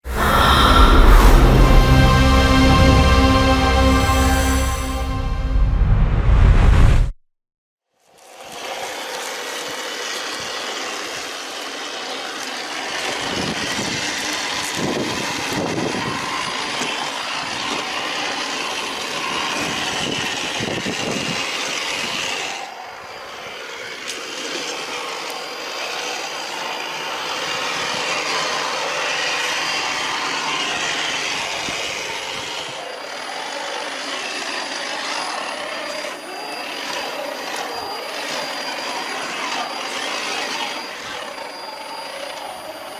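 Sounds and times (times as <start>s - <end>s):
low rumbling: 0.0s - 7.1s
toy truck motor running: 8.2s - 42.9s.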